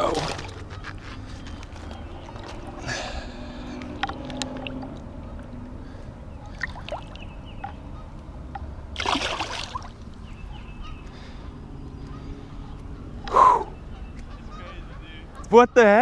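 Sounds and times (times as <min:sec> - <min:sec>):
water splash: 0:00.0 - 0:00.6, 0:09.0 - 0:10.0
pond water sloshing: 0:00.0 - 0:05.7, 0:06.4 - 0:10.3.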